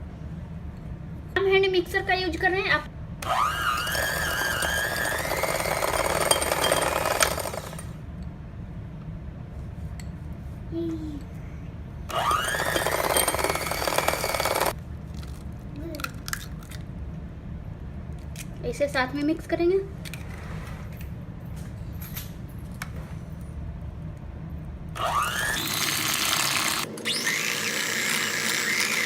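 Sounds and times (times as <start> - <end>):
electric hand mixer whirring: 3.2 - 7.9, 12.1 - 14.8, 25.0 - 29.0.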